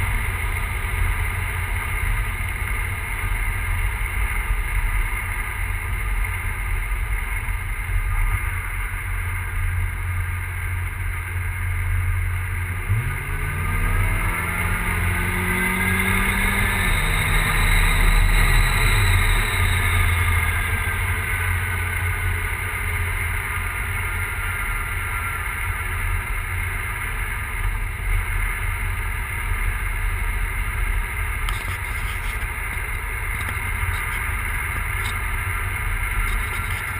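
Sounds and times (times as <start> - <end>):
car engine idling unevenly: 0.0 - 36.9
engine revving: 11.5 - 26.6.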